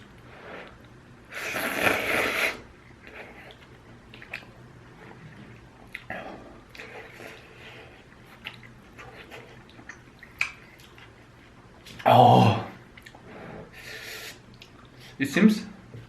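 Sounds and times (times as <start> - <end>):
loud slurp of noodles: 1.3 - 2.7
wet chewing: 2.9 - 12.1.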